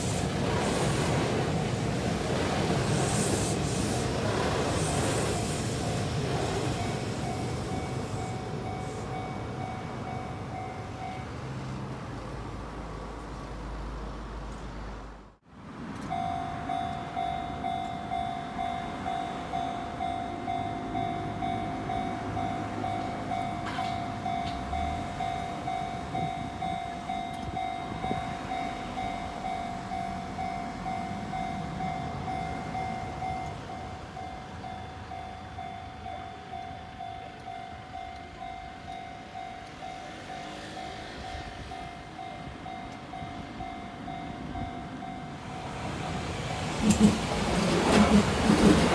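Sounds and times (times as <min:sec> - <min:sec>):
electric train rumbling: 0:00.0 - 0:48.9
level crossing warning bell: 0:05.9 - 0:11.8, 0:16.1 - 0:48.9.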